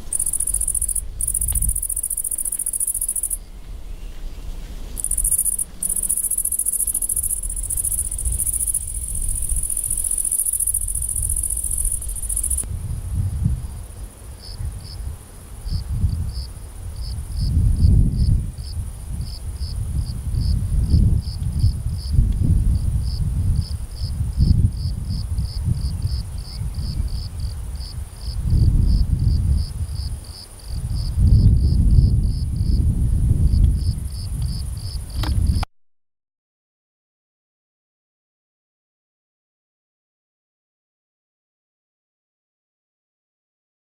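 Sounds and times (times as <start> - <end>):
cricket chirping: 0.0 - 3.5, 5.0 - 12.7, 14.3 - 32.8
insect trill: 0.0 - 3.5, 5.0 - 12.7
low rumble in gusts: 0.0 - 35.6.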